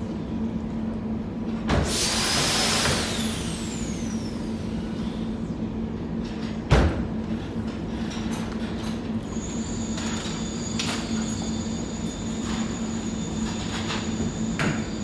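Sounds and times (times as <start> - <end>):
loud hissing with falling whistle: 9.4 - 15.0.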